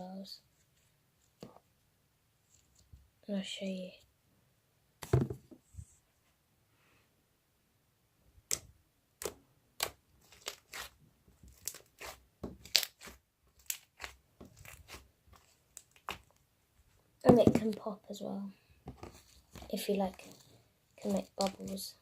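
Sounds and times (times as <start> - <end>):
slime squished by hand: 8.5 - 16.3.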